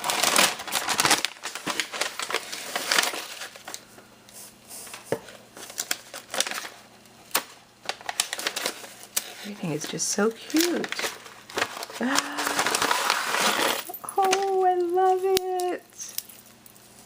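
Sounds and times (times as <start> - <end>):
packaging rustling and crinkling: 0.0 - 17.0.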